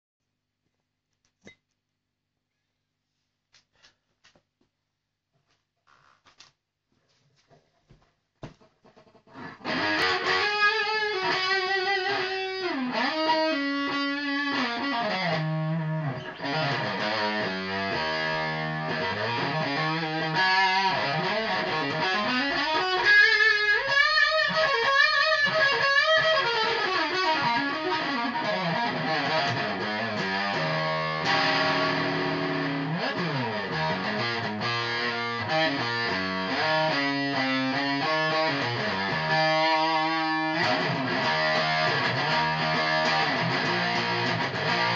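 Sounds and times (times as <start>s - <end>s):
electric guitar lead lines: 9.0s - 44.9s.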